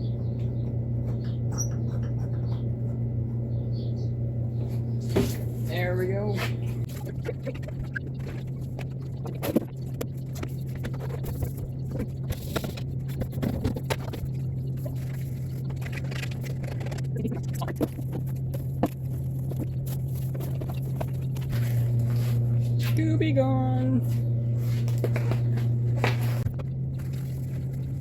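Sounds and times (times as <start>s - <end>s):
steady low hum: 0.0s - 28.0s
items clicking and scraping: 6.6s - 23.0s, 24.1s - 28.0s.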